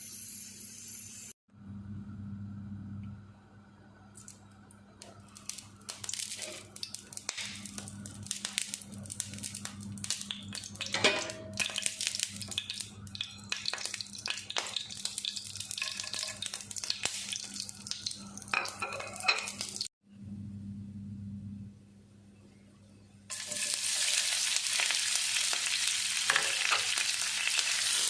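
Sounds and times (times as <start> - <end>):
low hum: 1.5 - 13.5, 20.1 - 23.3
food sizzling in a frying pan: 5.1 - 19.9, 23.3 - 28.0.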